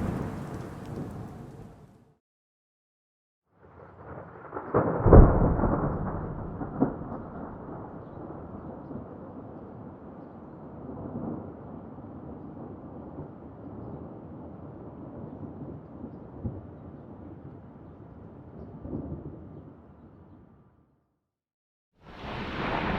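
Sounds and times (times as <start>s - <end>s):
storm noise: 0.0s - 2.1s, 3.8s - 9.6s, 22.0s - 22.9s
thunder crack and rumble: 0.0s - 2.1s, 3.6s - 19.8s, 22.1s - 22.9s.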